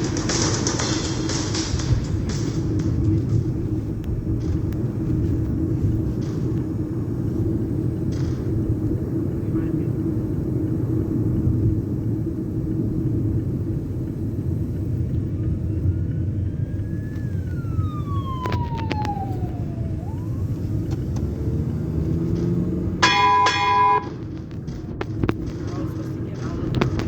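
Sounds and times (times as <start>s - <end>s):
low rumble: 0.0s - 27.0s
rising and falling tone: 16.4s - 24.1s.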